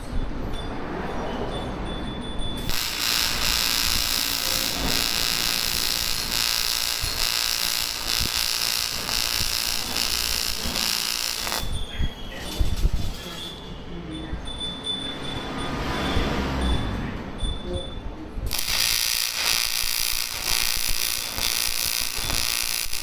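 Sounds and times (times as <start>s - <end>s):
welding arc buzzing hiss: 2.6s - 11.8s, 18.5s - 23.0s.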